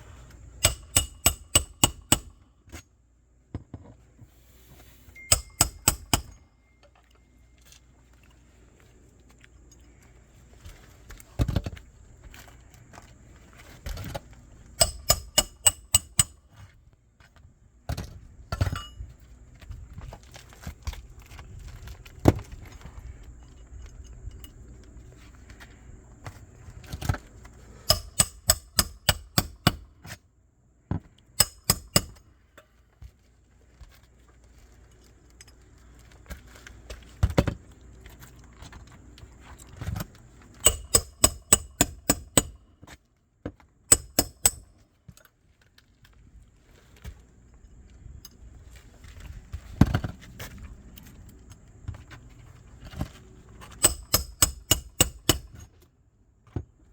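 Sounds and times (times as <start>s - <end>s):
hammer striking metal: 0.6s - 2.3s, 5.2s - 6.4s, 14.8s - 16.4s, 27.9s - 29.8s, 31.4s - 32.2s, 40.6s - 42.6s, 43.9s - 44.7s, 53.8s - 55.5s.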